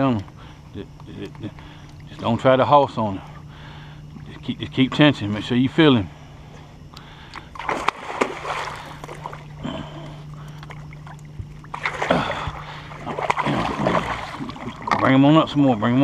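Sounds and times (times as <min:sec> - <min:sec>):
boat motor humming: 0:00.0 - 0:16.0
water splashing and sloshing: 0:06.6 - 0:15.8.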